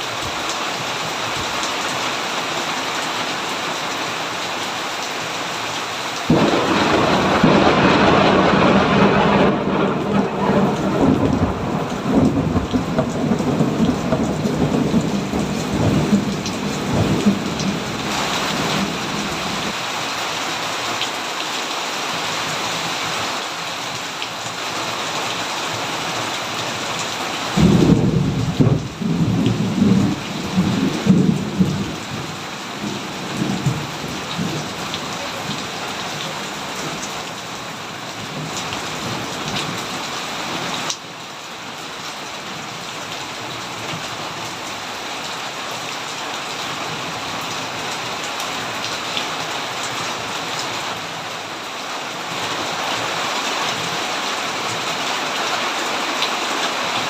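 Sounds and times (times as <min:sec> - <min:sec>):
steady rain falling: 0:00.0 - 0:57.0
loud peal of thunder: 0:06.3 - 0:19.7, 0:27.6 - 0:32.3
thunder rumbling: 0:06.3 - 0:19.8, 0:27.6 - 0:35.3.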